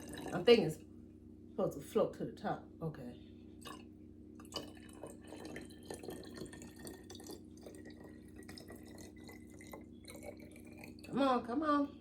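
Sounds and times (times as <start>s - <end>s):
water pouring into a bottle: 0.0s - 0.5s, 3.6s - 11.2s.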